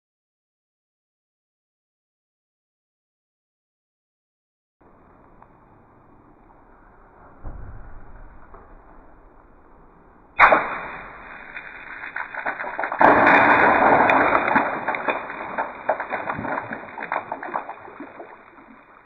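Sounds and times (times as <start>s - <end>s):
splashing water: 10.4s - 19.0s
water balloon bursting: 10.4s - 19.0s.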